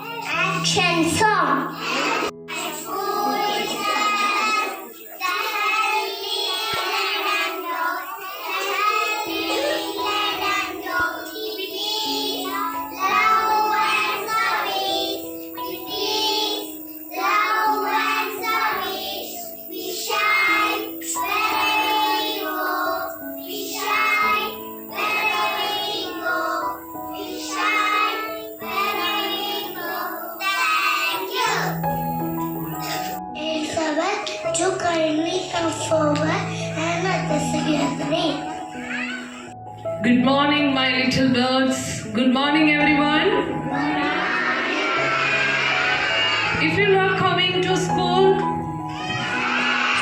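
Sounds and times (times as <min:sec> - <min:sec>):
musical backing: 0:00.0 - 0:50.0
children singing: 0:01.6 - 0:33.2, 0:43.6 - 0:46.6, 0:47.9 - 0:50.0.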